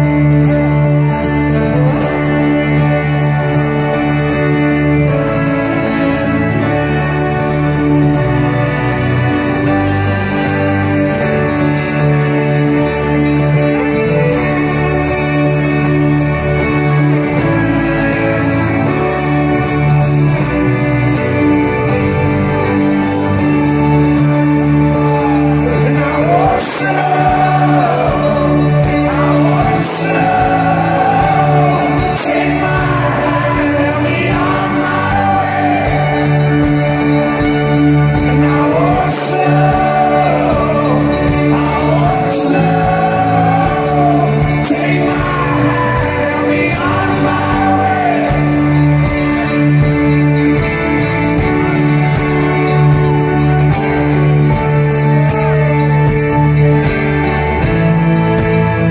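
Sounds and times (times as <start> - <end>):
held chords: 0.0 - 58.9
slow song with gliding melody: 0.0 - 58.9.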